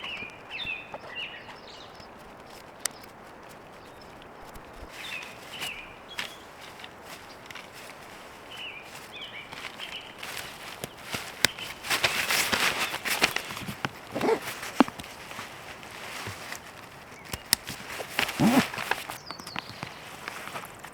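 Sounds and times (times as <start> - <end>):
bird chirps: 0.0 - 6.5, 19.2 - 20.1
close rustling and crunching: 0.0 - 20.9.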